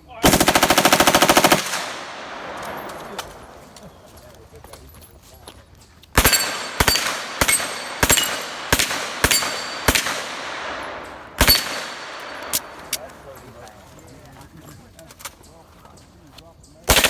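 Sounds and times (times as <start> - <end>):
submachine gun firing bursts: 0.2 - 3.8, 6.2 - 12.9
gunfire echo: 0.2 - 4.2, 6.2 - 13.4.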